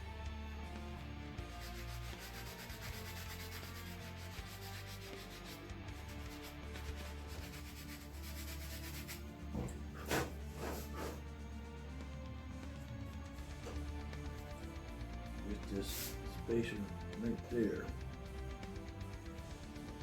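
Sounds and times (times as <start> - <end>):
background music: 0.0 - 20.0
hand rubbing and scraping: 7.3 - 11.3.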